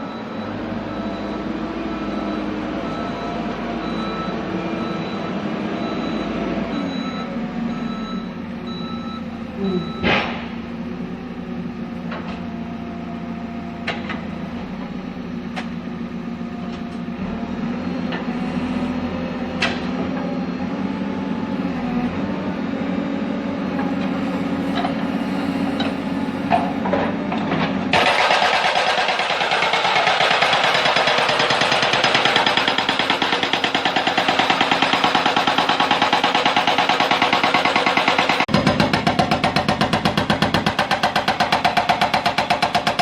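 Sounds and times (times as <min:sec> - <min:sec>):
diesel engine running: 0:00.0 - 0:43.0
hydraulic breaker pounding stone: 0:23.7 - 0:43.0.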